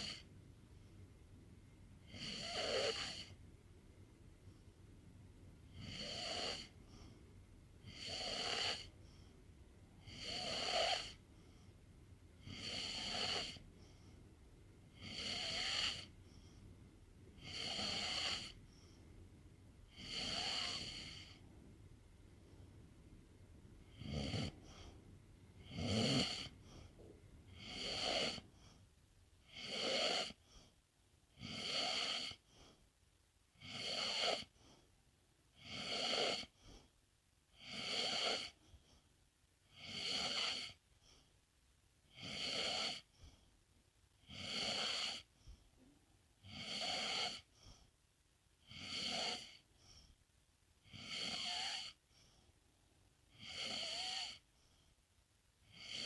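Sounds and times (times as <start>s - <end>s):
pet snoring: 0.0s - 0.3s, 2.0s - 3.4s, 5.7s - 7.2s, 7.8s - 9.2s, 10.0s - 11.6s, 12.4s - 14.1s, 14.9s - 16.6s, 17.4s - 18.9s, 19.9s - 21.4s, 23.8s - 25.0s, 25.6s - 28.8s, 29.4s - 30.7s, 31.3s - 32.8s, 33.5s - 34.8s, 35.5s - 36.9s, 37.5s - 39.0s, 39.7s - 41.2s, 42.1s - 43.4s, 44.2s - 45.6s, 46.4s - 47.9s, 48.6s - 50.1s, 50.8s - 52.4s, 53.3s - 54.8s, 55.6s - 56.0s.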